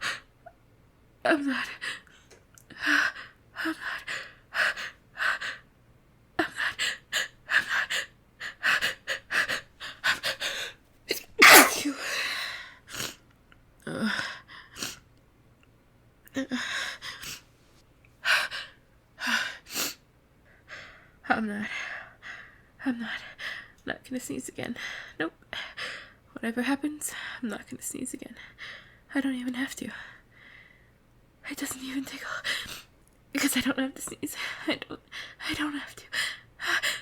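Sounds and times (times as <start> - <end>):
woman breathing quickly: 6.6 - 10.8, 18.2 - 23.8, 30.1 - 31.0
woman sneezing: 11.4 - 12.1.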